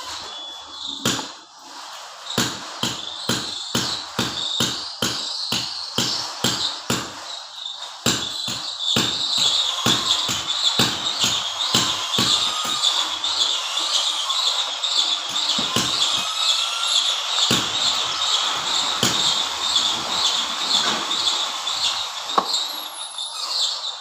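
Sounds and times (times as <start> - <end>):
high-pitched pulsing chirr: 0.0 - 24.0.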